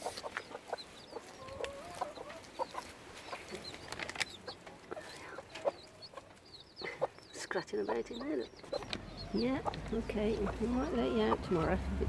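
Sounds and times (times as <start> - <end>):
birds scratching in bedding: 0.0 - 6.5, 8.0 - 12.0
hen clucking softly: 0.0 - 11.8
chicks peeping: 0.0 - 12.0.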